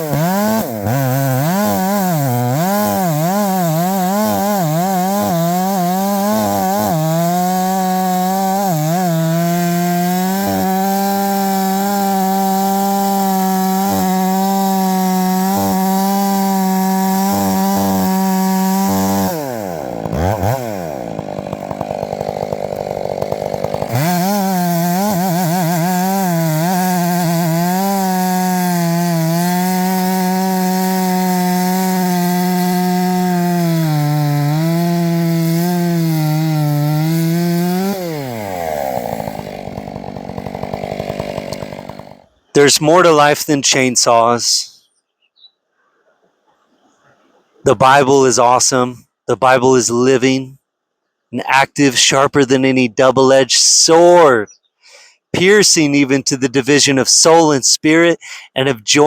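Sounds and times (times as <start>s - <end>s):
chainsaw cutting through log: 0.0s - 43.2s.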